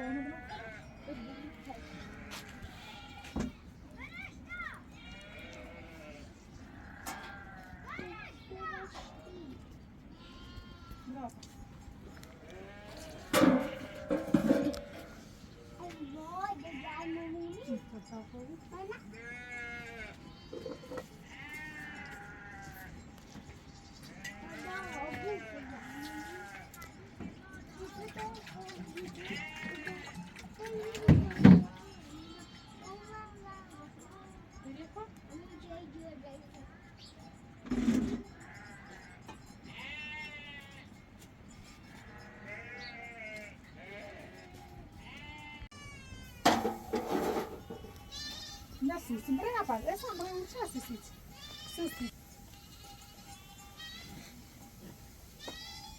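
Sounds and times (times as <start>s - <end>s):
sheep bleating: 0.0s - 3.5s, 4.9s - 8.1s, 10.2s - 11.3s, 12.2s - 17.9s, 19.1s - 22.9s, 24.1s - 26.8s, 29.1s - 30.3s, 39.7s - 40.9s, 41.9s - 46.5s.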